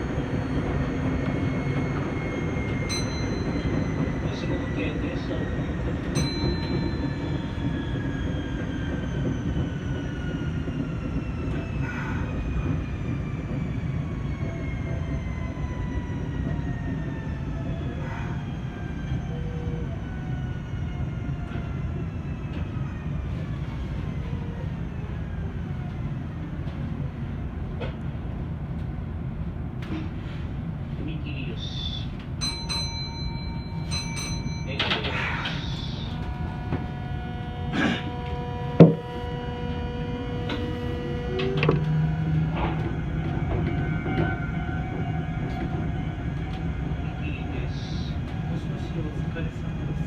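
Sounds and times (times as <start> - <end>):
train wheels rumbling on rails: 0.0 - 50.0
traction motor whine: 35.5 - 46.7.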